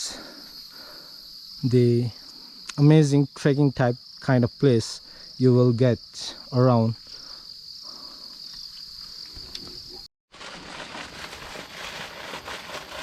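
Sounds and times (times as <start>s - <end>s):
steady noisy hiss: 0.0s - 6.9s
insects chirring: 0.0s - 13.0s.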